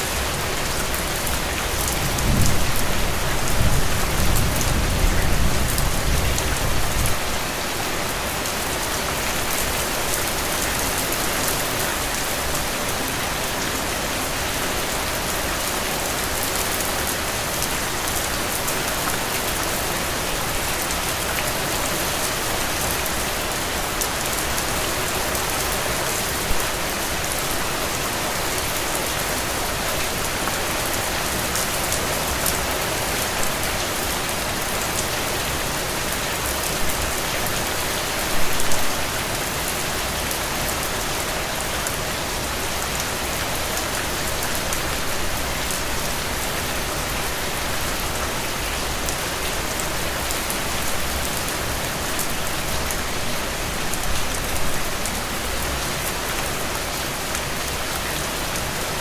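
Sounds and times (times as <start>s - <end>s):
heavy rain on soil and puddles: 0.0s - 59.0s.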